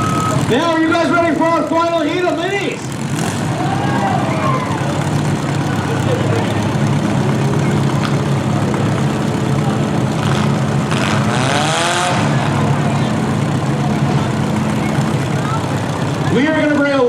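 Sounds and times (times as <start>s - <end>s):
car engine revving: 0.0s - 17.0s
car engines droning: 0.0s - 17.0s.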